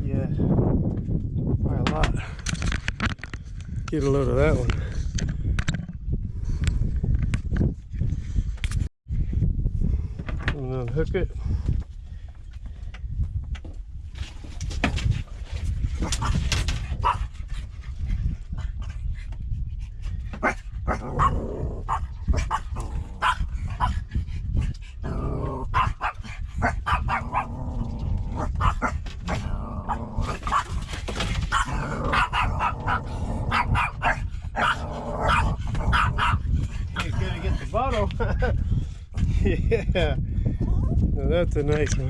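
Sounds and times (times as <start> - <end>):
steady low rumble: 31.7 - 42.0.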